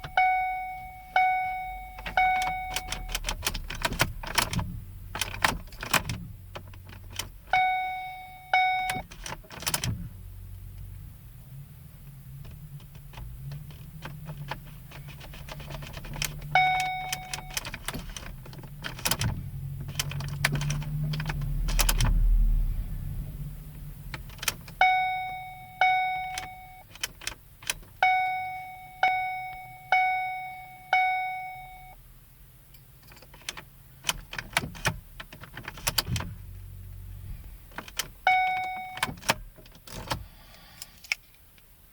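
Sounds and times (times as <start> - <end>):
car warning chime dinging: 0.0 - 4.6, 7.5 - 9.1, 16.2 - 18.2, 24.4 - 27.0, 27.9 - 32.0, 38.2 - 39.2.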